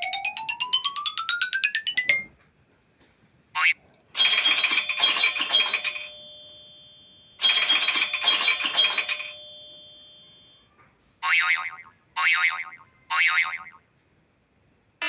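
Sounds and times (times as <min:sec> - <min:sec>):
phone ringtone chiming: 0:00.0 - 0:02.4, 0:04.2 - 0:06.8, 0:07.4 - 0:10.4.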